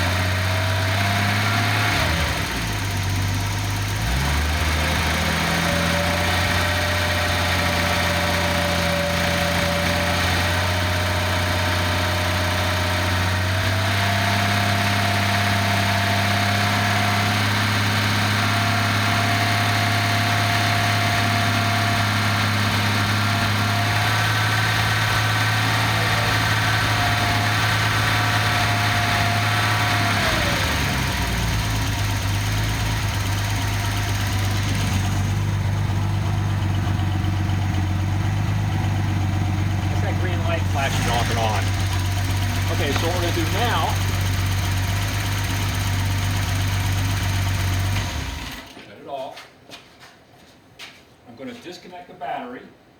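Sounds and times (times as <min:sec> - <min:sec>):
car engine idling: 0:00.0 - 0:48.7
steady whine: 0:39.0 - 0:45.7.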